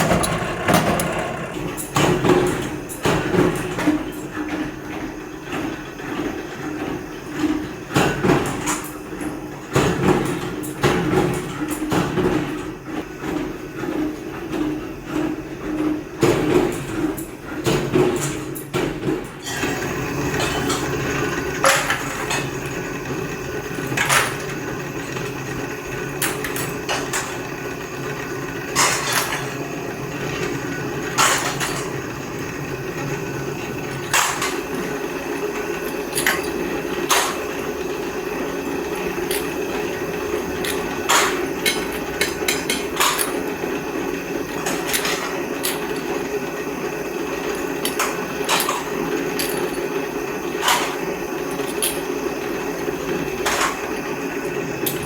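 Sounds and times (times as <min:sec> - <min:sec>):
machine hum: 0:00.0 - 0:02.7.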